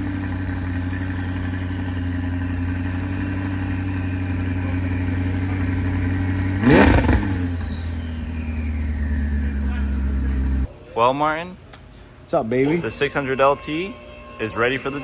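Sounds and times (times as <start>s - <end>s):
car engine idling: 0.0s - 10.7s
engine revving: 0.0s - 10.7s
falling whine: 0.0s - 10.7s.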